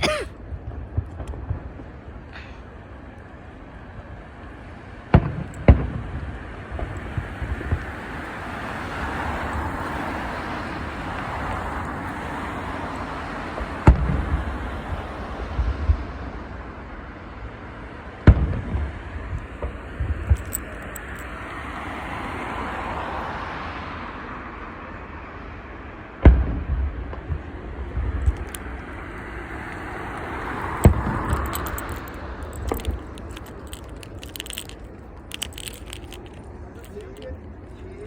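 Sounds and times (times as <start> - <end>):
steady background noise: 0.0 - 22.3, 24.5 - 38.0.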